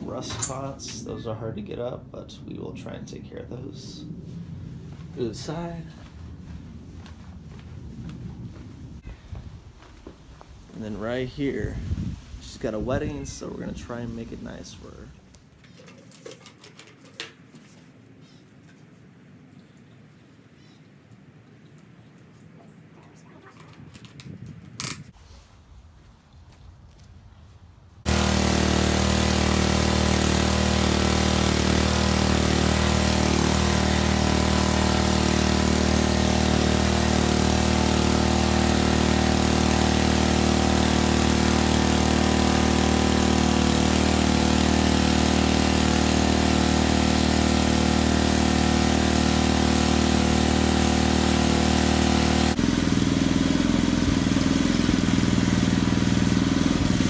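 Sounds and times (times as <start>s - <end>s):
pressure washer engine running: 0.0s - 1.0s, 28.1s - 57.0s.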